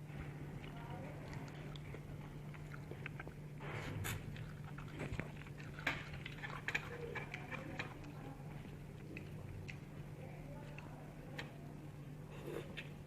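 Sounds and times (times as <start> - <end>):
steady low hum: 0.0 - 13.0
person chewing noodles: 0.2 - 10.2.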